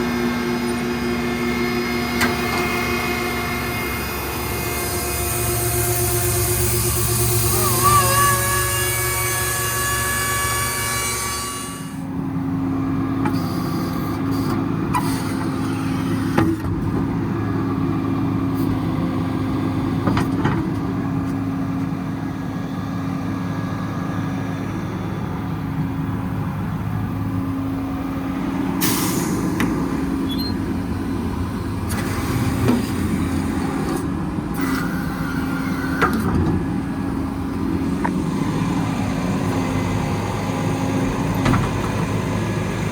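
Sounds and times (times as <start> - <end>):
diesel engine running: 0.0 - 42.9.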